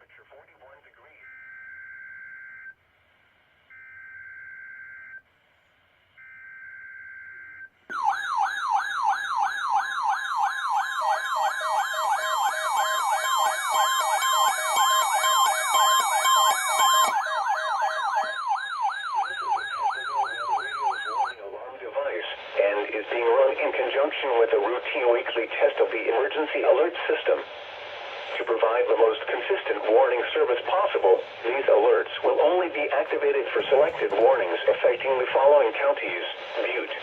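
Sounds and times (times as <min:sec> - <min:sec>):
warbling electronic siren alarm: 0:01.2 - 0:02.8, 0:03.7 - 0:05.2, 0:06.2 - 0:21.4.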